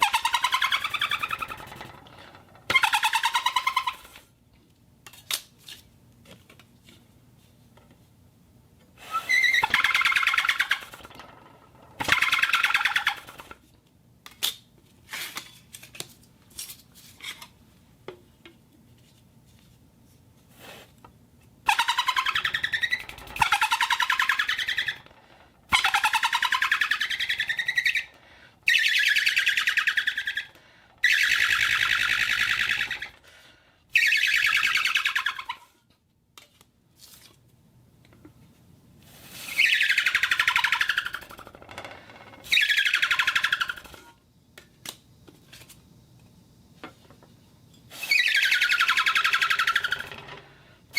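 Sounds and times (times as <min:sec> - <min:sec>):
shrill warbling whistle blasts: 0:28.7 - 0:30.4, 0:31.0 - 0:33.0, 0:33.9 - 0:35.4, 0:39.5 - 0:41.2, 0:42.5 - 0:43.8, 0:47.9 - 0:50.0.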